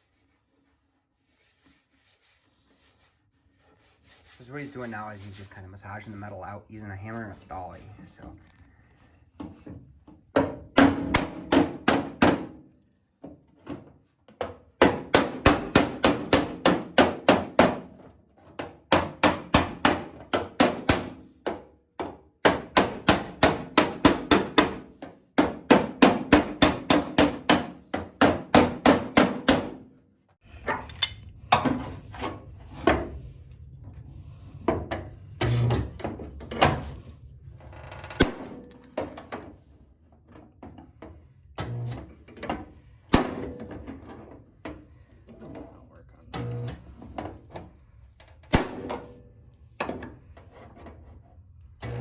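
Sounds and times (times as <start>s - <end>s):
hammer beating steel panel: 10.4s - 12.6s, 14.8s - 17.9s, 18.9s - 21.2s, 22.4s - 29.9s.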